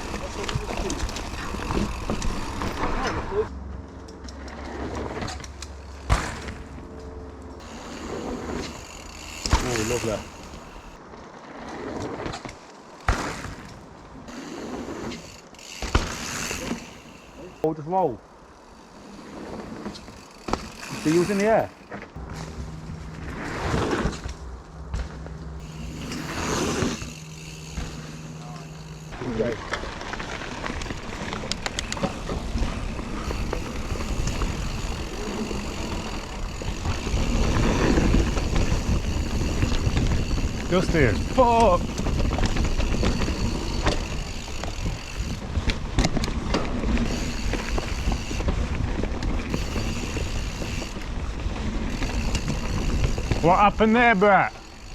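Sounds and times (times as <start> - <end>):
bike tyres rumbling on dirt: 0.0 - 3.8, 4.4 - 7.0, 7.6 - 17.6, 18.7 - 54.9
wind rumbling on microphone: 28.8 - 53.6.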